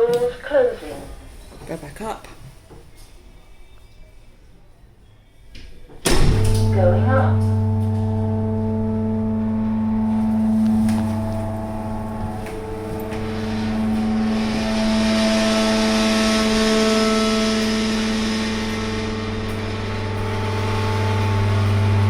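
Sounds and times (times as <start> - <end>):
platform lift drive humming: 6.1 - 22.0.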